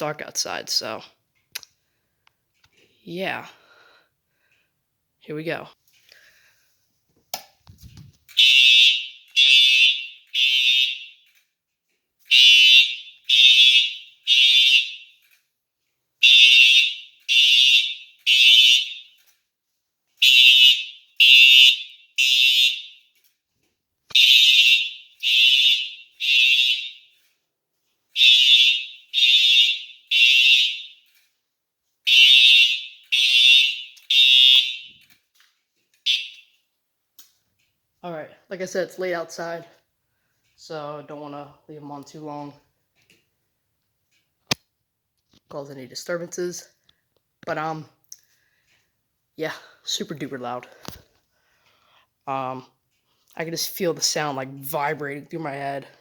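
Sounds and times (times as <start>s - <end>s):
fire alarm horn blasts: 8.4s - 11.4s, 12.2s - 15.2s, 16.2s - 19.3s, 20.2s - 23.2s, 24.1s - 27.3s, 28.1s - 31.1s, 32.0s - 35.0s, 36.1s - 36.6s.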